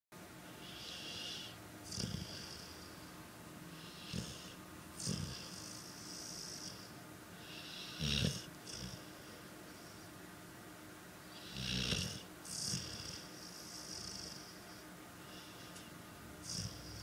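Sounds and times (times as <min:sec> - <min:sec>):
dog snoring: 0:00.5 - 0:10.1, 0:11.3 - 0:17.0.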